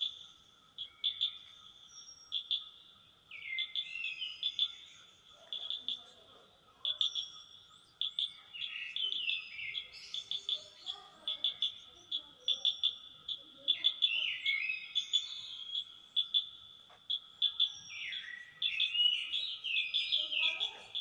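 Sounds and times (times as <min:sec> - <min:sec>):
faint insect drone: 0:00.0 - 0:21.0
wild birds singing and calling: 0:00.0 - 0:21.0.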